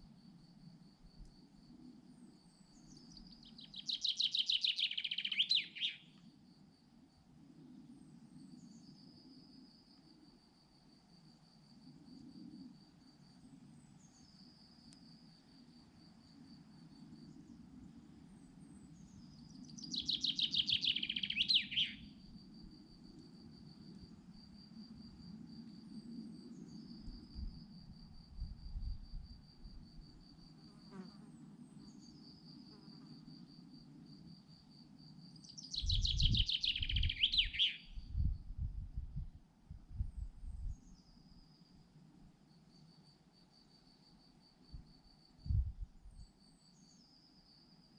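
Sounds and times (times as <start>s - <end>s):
songbird fast trill: 2.8s - 6.1s, 19.6s - 22.1s, 35.4s - 38.0s
insect trilling: 3.4s - 6.0s, 19.7s - 22.0s
faint low rumble: 37.9s - 41.4s, 44.8s - 46.3s.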